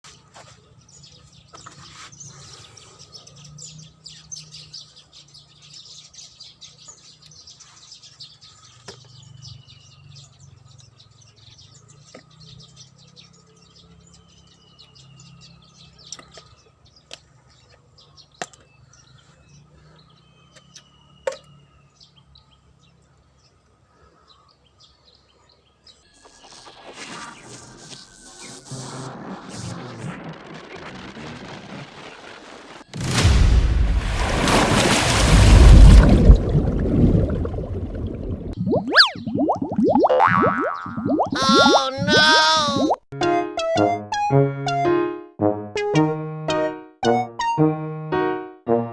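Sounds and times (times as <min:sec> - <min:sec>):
birds chirping: 0:00.1 - 0:26.7, 0:35.4 - 0:43.1
falling whistles: 0:38.6 - 0:40.1.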